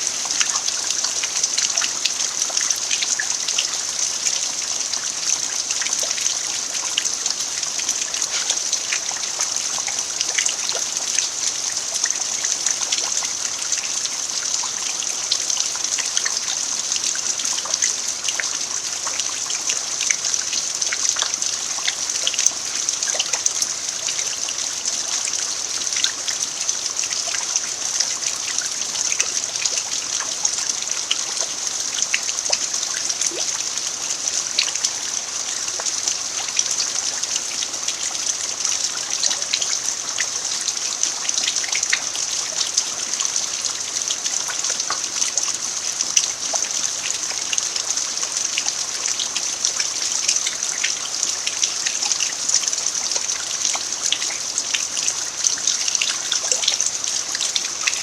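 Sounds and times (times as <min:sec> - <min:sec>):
steady rain hiss: 0:00.0 - 0:58.0.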